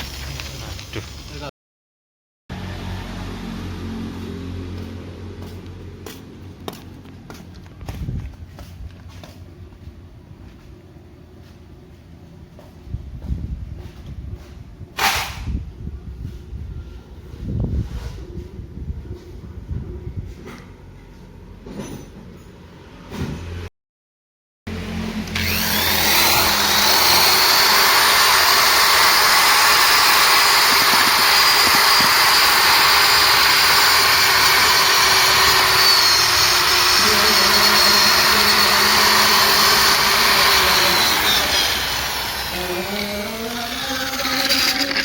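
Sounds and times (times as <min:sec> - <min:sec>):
drill wire brush grinding: 0:25.3 - 0:45.0.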